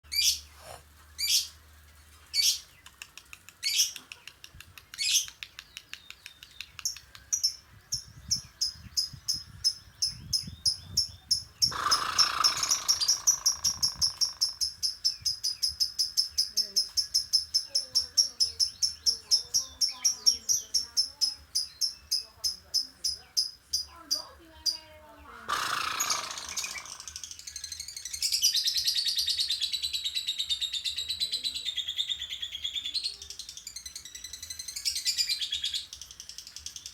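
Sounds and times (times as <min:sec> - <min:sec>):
lovebird rapid high chattering: 0:02.4 - 0:29.4
lovebird sharp high calls: 0:09.7 - 0:22.2, 0:24.7 - 0:29.6
lovebird fast ticking notes: 0:11.7 - 0:14.8, 0:25.5 - 0:27.4.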